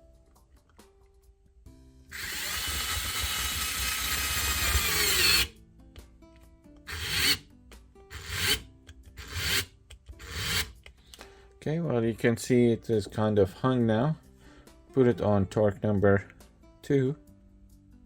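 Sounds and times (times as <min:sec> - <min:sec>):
cordless screwdriver driving screw: 0:02.2 - 0:05.5, 0:06.9 - 0:07.4, 0:08.1 - 0:08.6, 0:09.2 - 0:10.8.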